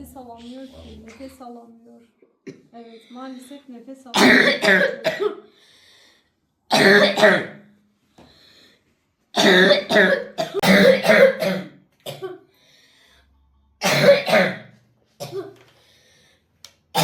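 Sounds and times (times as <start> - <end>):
boy coughing harshly: 4.2 - 5.5, 6.7 - 7.6, 9.4 - 12.5, 13.8 - 15.6.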